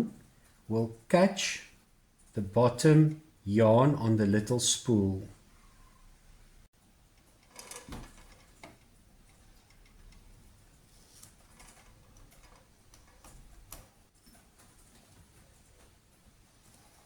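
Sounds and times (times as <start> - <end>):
sewing machine mechanism clicking: 7.1 - 15.0.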